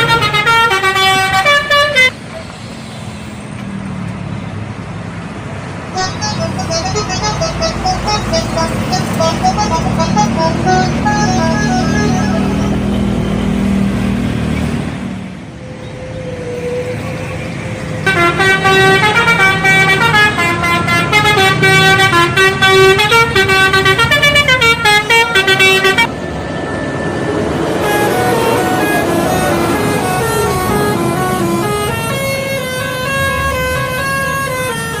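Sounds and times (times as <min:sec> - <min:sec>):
bus horn playing melody: 0:00.0 - 0:02.2, 0:05.9 - 0:13.6, 0:17.9 - 0:26.1, 0:27.8 - 0:35.0
bus engine: 0:00.0 - 0:35.0
traffic noise: 0:00.0 - 0:35.0.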